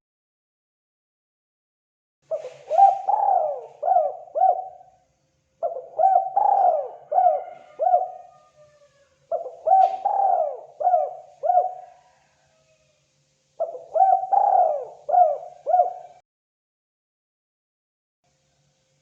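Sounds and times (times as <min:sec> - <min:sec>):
dove cooing: 0:02.3 - 0:05.0, 0:05.6 - 0:12.8, 0:13.6 - 0:16.2.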